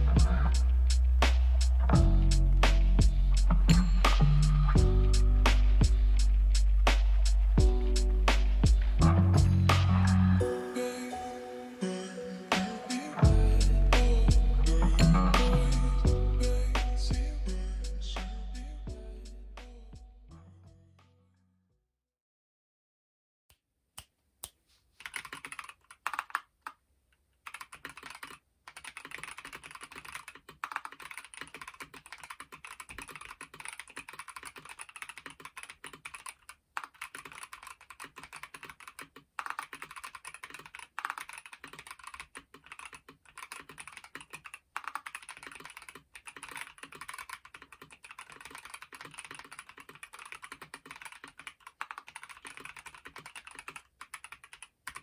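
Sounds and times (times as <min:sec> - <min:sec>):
fast typing on mechanical keyboard: 0:25.0 - 0:26.8, 0:27.4 - 0:55.0.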